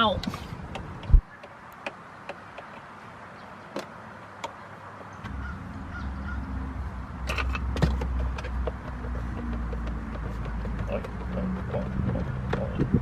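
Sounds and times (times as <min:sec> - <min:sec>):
clicks and knocks on plastic: 0:07.3 - 0:13.0.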